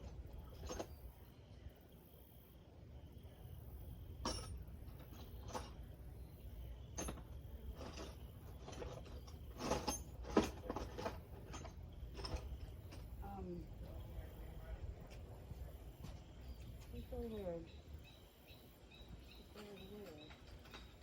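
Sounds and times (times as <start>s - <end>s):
hand tools clinking on metal: 4.2s - 5.8s, 6.9s - 13.3s, 19.6s - 21.0s.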